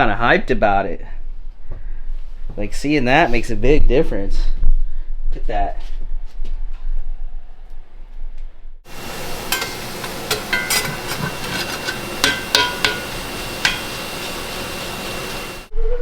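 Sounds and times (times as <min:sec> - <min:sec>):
dishes and utensils clattering: 0:08.9 - 0:15.7
steady hiss: 0:08.9 - 0:15.7.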